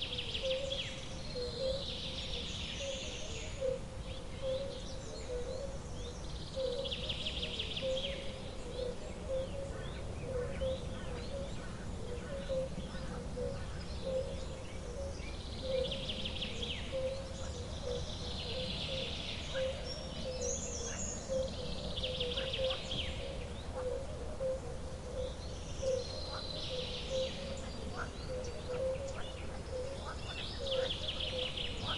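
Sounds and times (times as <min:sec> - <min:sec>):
buzzy bird trilling songs: 0:04.4 - 0:31.9
bird chirps: 0:24.4 - 0:31.9.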